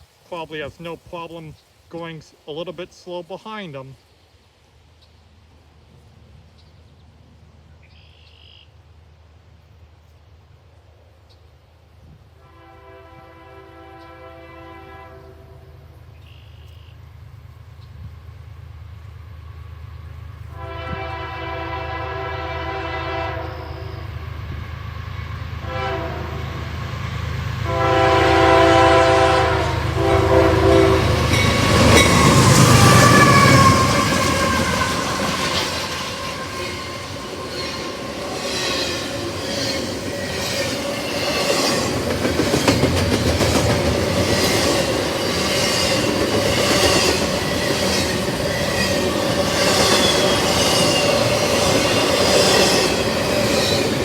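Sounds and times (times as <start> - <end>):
diesel locomotive passing: 7.1 - 54.0
train air horn blasts: 12.3 - 15.8, 20.5 - 24.1, 25.6 - 26.6, 27.6 - 39.0
train wheels clacking on rail joints: 30.3 - 54.0.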